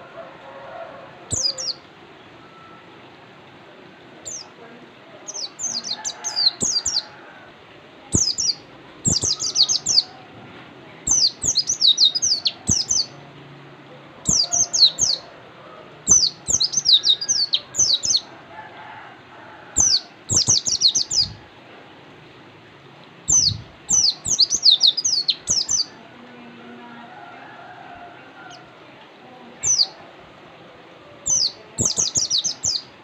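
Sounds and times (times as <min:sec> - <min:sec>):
bird chirping: 0:01.3 - 0:01.9, 0:08.1 - 0:10.1, 0:11.1 - 0:13.1, 0:14.3 - 0:15.2, 0:16.1 - 0:18.3, 0:19.8 - 0:21.4, 0:23.3 - 0:25.9, 0:31.3 - 0:32.9.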